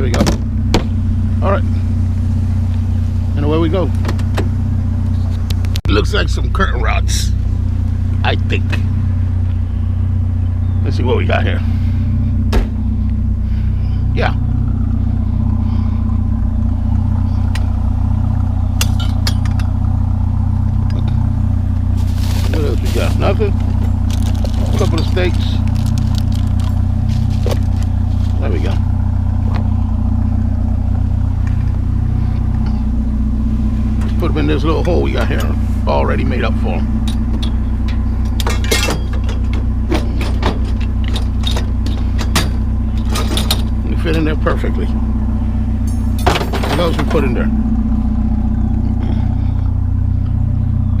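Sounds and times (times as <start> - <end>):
vehicle engine idling: 0.0 - 51.0
metal stakes clinking and knocking: 18.8 - 19.8, 37.0 - 43.7.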